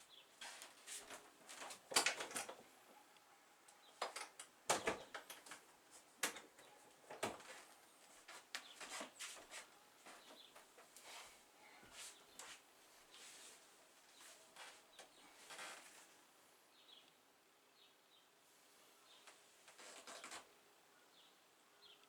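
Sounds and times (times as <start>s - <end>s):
body rustling on yoga mat: 7.5s - 16.2s.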